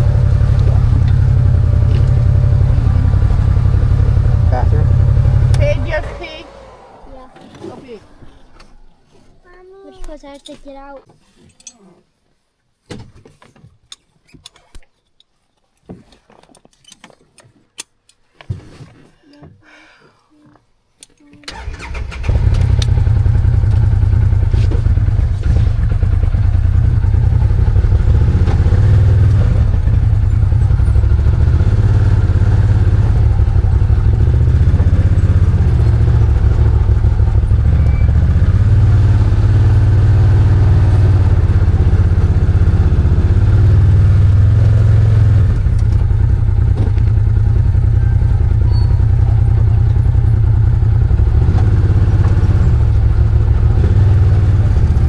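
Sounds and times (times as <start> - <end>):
engine running with clatter: 0.0 - 9.2, 21.5 - 55.0.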